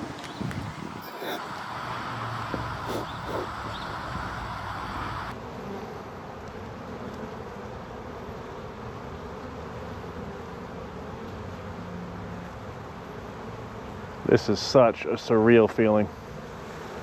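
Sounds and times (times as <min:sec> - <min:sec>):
bee swarm buzzing: 0:00.0 - 0:11.8, 0:12.4 - 0:17.0.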